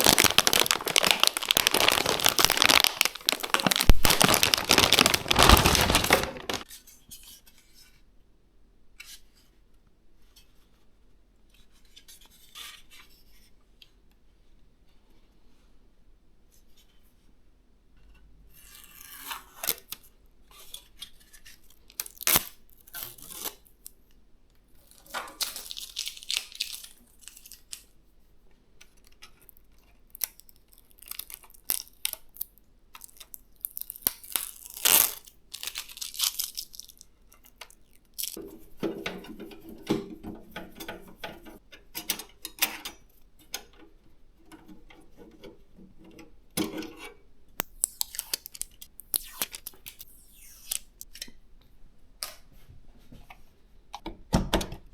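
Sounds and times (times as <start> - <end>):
rustling tearing noise: 0.0 - 6.7, 21.2 - 24.0, 24.8 - 28.0, 29.5 - 38.7, 47.6 - 51.1.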